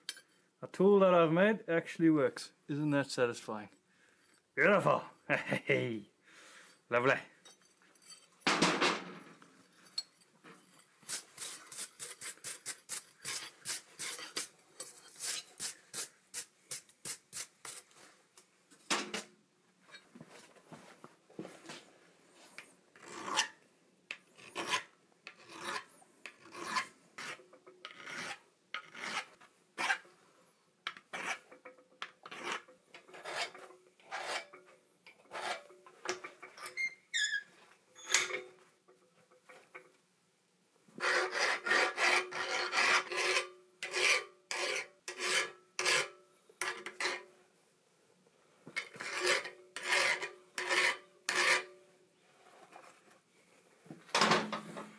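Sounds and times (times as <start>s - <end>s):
file rasping on steel: 11.1s - 17.9s, 23.0s - 23.6s, 24.4s - 30.1s, 30.9s - 31.6s, 32.2s - 34.6s, 35.3s - 36.7s, 41.0s - 47.3s, 48.8s - 51.8s.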